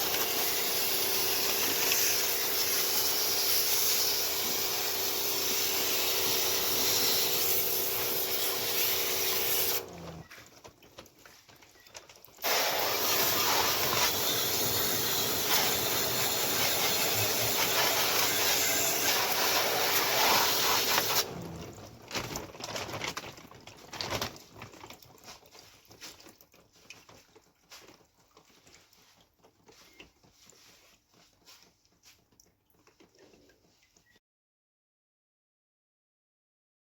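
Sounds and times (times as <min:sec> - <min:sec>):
hissing jet of spray: 0:00.0 - 0:10.0, 0:12.4 - 0:21.6
faint ticks and drips: 0:10.2 - 0:12.4, 0:21.6 - 0:34.2.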